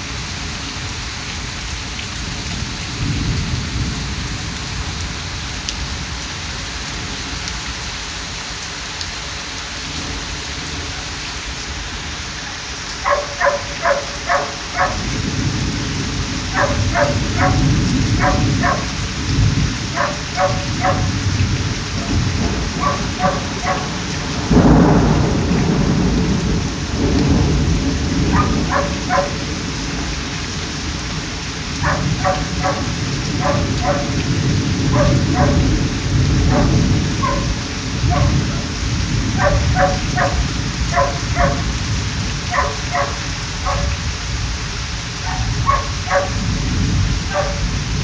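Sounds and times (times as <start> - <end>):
rain hissing: 0.0 - 48.0
thunder rumbling: 1.4 - 7.4, 12.4 - 48.0
dog barking: 13.0 - 15.2, 16.5 - 19.1, 19.9 - 21.2, 22.0 - 24.2, 28.2 - 29.6, 31.8 - 34.3, 34.9 - 38.8, 39.4 - 41.8, 42.5 - 44.0, 45.2 - 46.5, 47.2 - 47.7.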